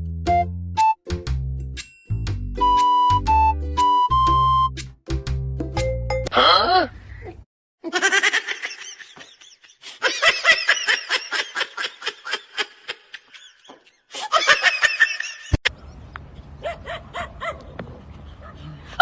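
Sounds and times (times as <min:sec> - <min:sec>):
person laughing: 0:06.4 - 0:15.6.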